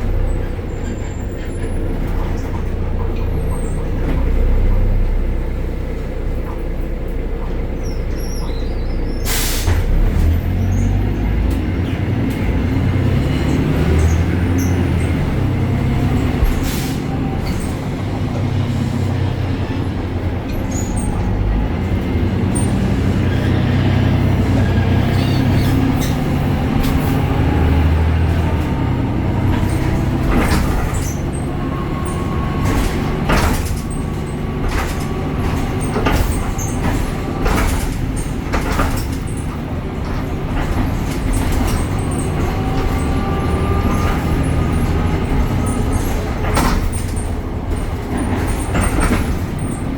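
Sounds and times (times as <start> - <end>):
bus diesel engine running: 0.0 - 49.9
knocks and rattles: 17.4 - 49.9.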